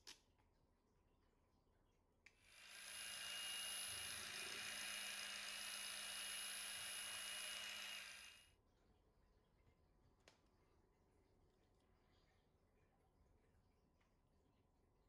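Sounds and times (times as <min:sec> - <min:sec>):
power tool hissing and humming: 0:02.5 - 0:08.4.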